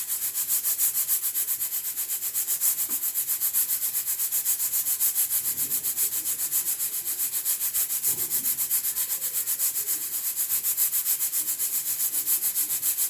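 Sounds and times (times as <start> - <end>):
pressure cooker steam hissing: 0.0 - 13.0.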